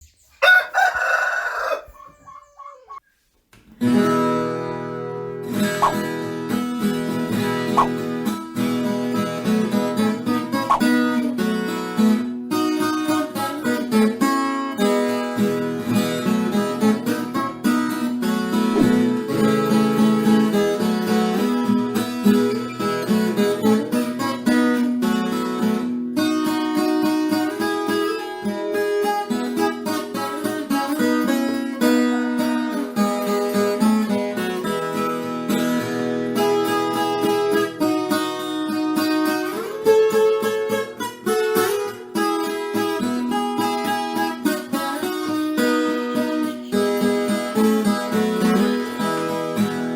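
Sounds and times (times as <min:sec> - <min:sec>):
acoustic plucked string instrument: 0:03.8 - 0:49.9.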